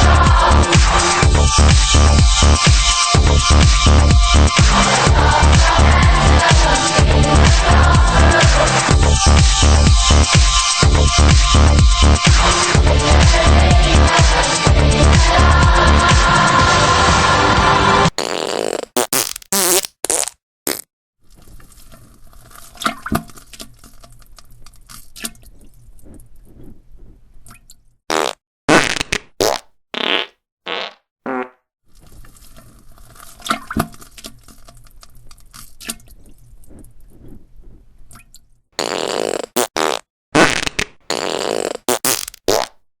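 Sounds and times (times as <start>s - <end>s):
fart sound effects: 18.1s - 20.9s, 28.1s - 31.6s, 38.8s - 42.8s.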